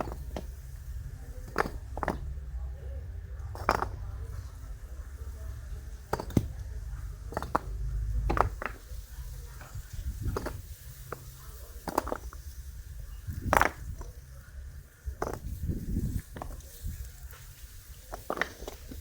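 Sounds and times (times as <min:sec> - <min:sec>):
steady low rumble: 0:00.0 - 0:18.2
hard clicks and knocks: 0:01.4 - 0:02.4, 0:06.0 - 0:06.6, 0:07.2 - 0:08.9.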